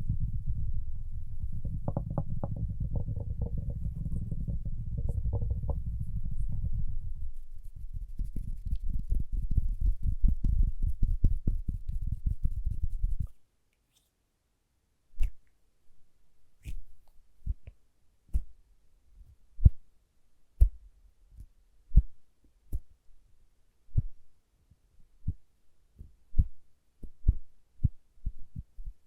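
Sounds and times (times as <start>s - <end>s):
fingers tapping and rubbing: 0.0s - 13.4s.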